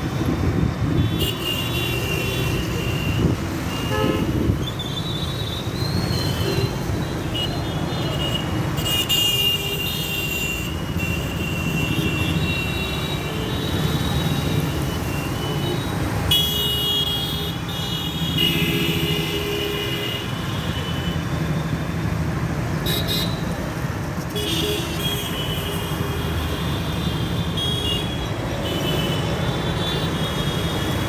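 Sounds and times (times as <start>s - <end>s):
rumble of traffic engines: 0.0s - 31.0s
vehicle horns honking: 1.0s - 4.5s, 6.3s - 21.2s.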